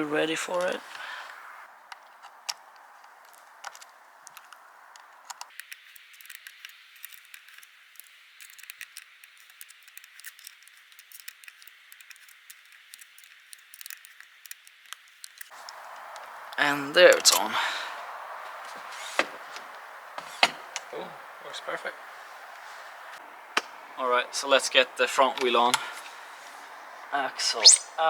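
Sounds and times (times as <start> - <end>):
small metal clicks of hand tool: 1.9 - 16.3.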